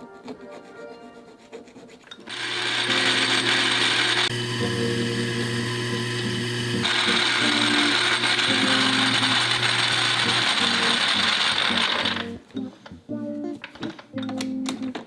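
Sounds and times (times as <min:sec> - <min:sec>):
quiet background music: 0:00.0 - 0:02.3, 0:04.3 - 0:15.0
small power tool grinding: 0:02.1 - 0:12.4.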